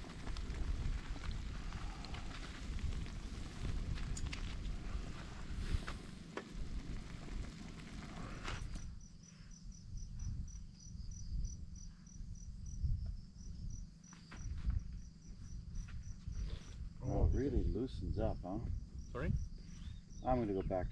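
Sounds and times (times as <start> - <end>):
low rumbling noise: 0.0 - 8.8
rush of wind-like noise: 0.0 - 8.8
cricket chirping: 0.0 - 20.9.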